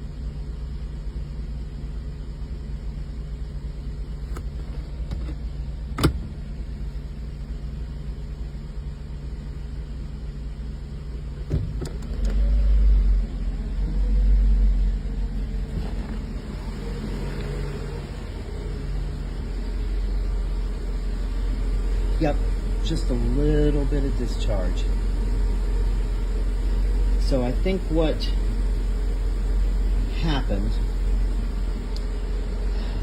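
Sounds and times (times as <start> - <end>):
car engine idling: 0.0 - 33.0.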